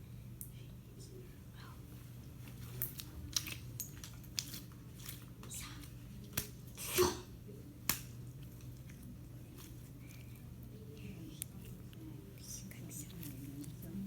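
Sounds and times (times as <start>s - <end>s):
slime squishing: 2.4s - 6.6s, 7.8s - 14.0s.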